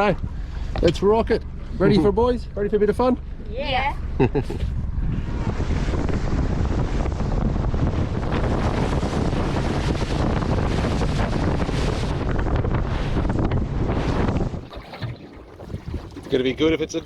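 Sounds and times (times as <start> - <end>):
water rushing past boat: 0.0 - 17.0
wind buffeting microphone: 0.0 - 17.0.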